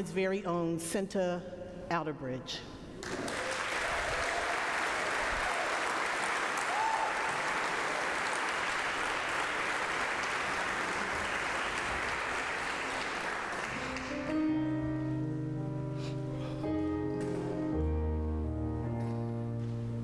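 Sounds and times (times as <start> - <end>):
congregation applauding: 3.0 - 14.4.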